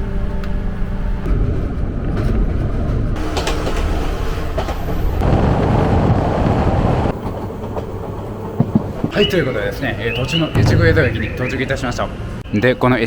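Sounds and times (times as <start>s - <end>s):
train rumbling on rails: 0.1s - 12.5s.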